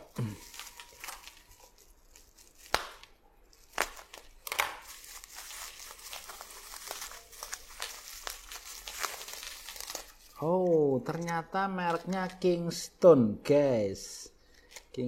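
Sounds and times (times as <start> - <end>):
packaging crinkling and tearing: 0.0 - 10.5.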